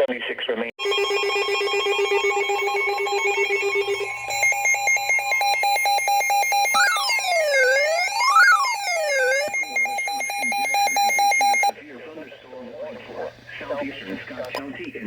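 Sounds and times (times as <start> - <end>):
fast two-tone warble: 1.4 - 11.7
siren-like sweeping tone: 1.8 - 11.7.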